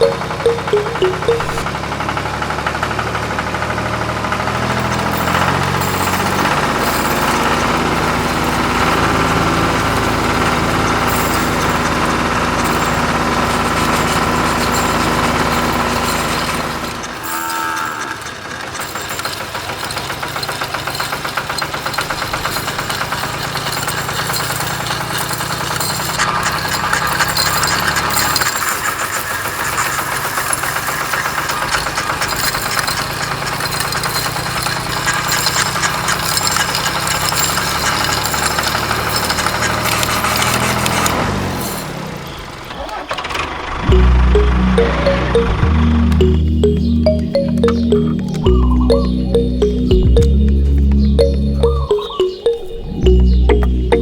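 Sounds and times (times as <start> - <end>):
engine idling with knocking: 2.2 - 41.8.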